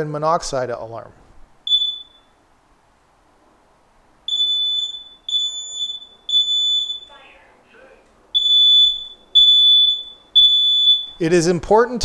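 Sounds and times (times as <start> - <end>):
smoke alarm high-pitched beeps: 1.6 - 2.4, 4.3 - 7.4, 8.3 - 11.3.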